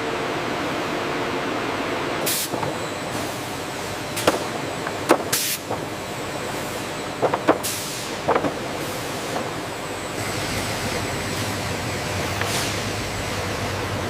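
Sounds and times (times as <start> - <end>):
factory machinery running: 0.0 - 14.0
compressed air hiss: 5.3 - 5.7.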